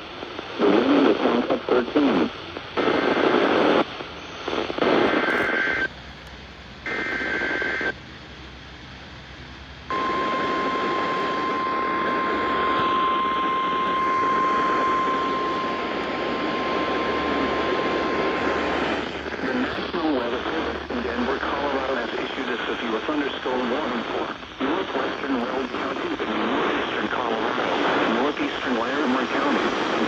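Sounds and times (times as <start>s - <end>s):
radio hiss: 0.0s - 30.0s
steady warning alarm tone: 9.9s - 19.2s
buzzing data bursts: 9.9s - 20.2s.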